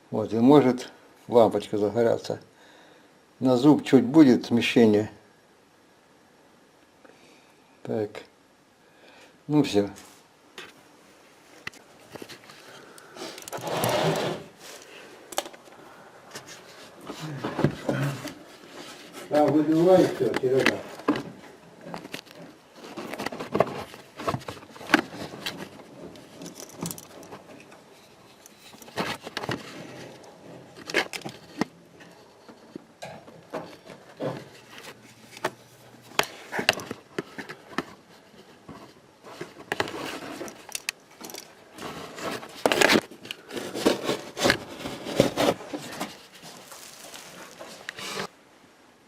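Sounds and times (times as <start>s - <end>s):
hand tools clicking and scraping: 11.7s - 48.3s.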